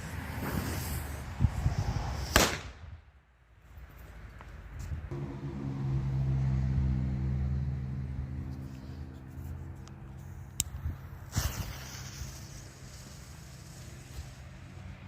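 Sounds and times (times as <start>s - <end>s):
sharp crack: 2.2s - 2.9s
vehicle engine humming: 5.0s - 15.0s.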